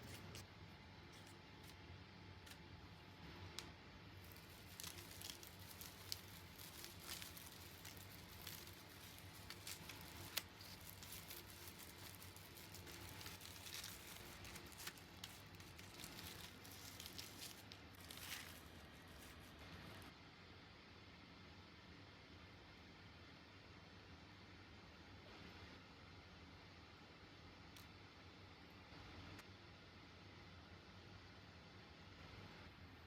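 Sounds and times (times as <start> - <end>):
crisp crackling and rustling: 3.5 - 20.1.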